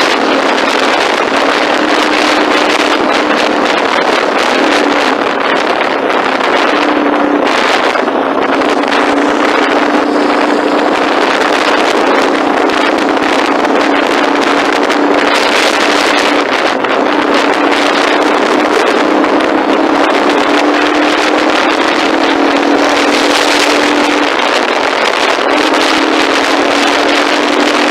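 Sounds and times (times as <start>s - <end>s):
steady engine-like drone: 0.0s - 27.9s.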